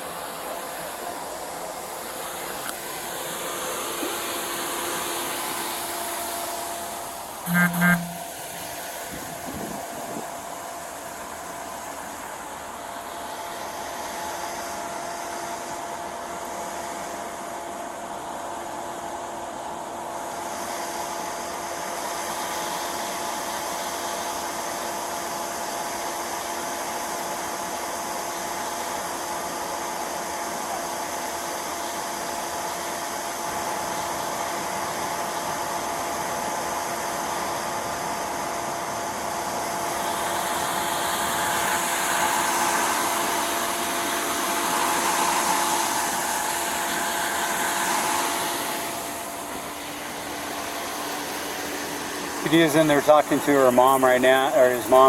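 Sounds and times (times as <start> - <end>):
fan whirring: 0.0 - 13.6, 33.9 - 55.0
faint hums: 7.2 - 10.2.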